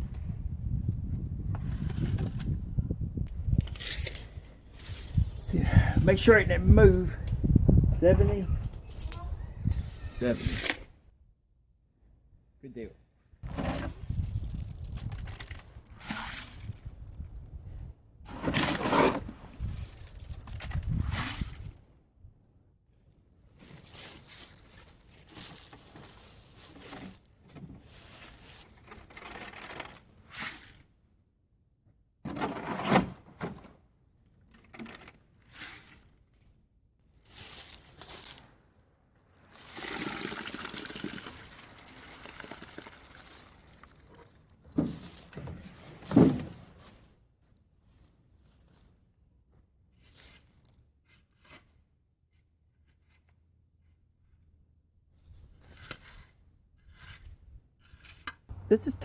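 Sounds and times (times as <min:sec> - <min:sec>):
shovel scraping wet concrete: 0:09.8 - 0:10.8, 0:16.0 - 0:16.8, 0:18.3 - 0:19.8.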